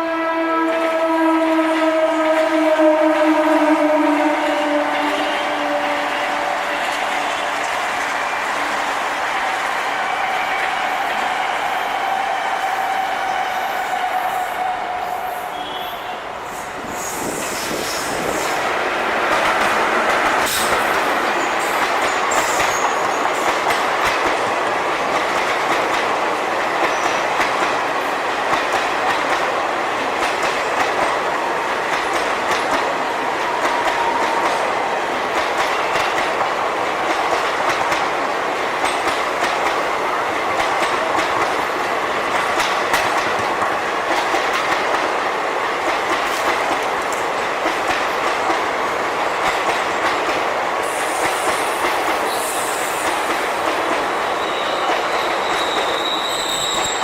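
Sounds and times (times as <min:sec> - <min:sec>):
train coaches creaking: 0:01.3 - 0:57.0
train wheels clattering: 0:16.9 - 0:57.0.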